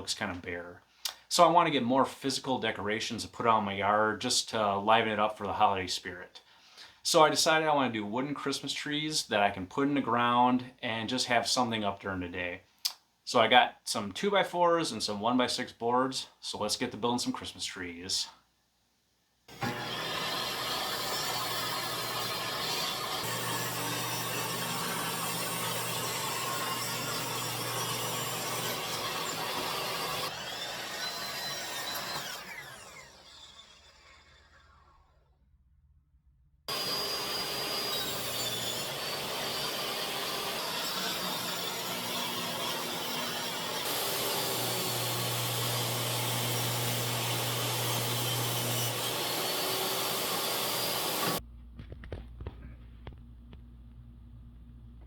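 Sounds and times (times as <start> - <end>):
power saw cutting wood: 19.5 - 35.2, 36.7 - 51.4
saw blade winding down whine: 19.5 - 35.4, 36.7 - 51.4.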